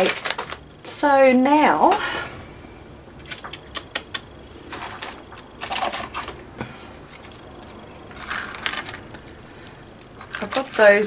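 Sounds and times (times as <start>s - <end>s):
small beads clicking and clattering: 10.1s - 11.0s.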